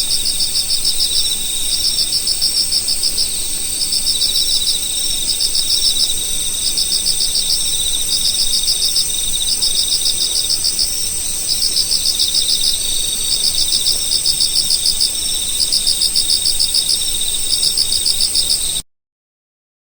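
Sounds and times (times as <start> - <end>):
high-pitched insect buzz: 0.0 - 18.8
insects chirping: 0.0 - 18.8.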